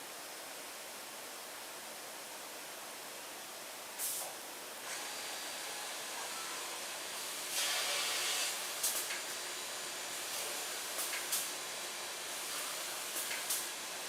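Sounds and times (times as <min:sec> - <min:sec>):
boring machine hissing: 0:04.9 - 0:14.0.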